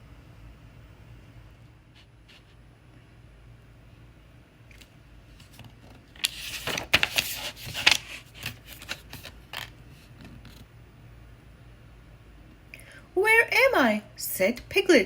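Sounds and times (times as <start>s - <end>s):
paper rustling: 5.4s - 10.6s.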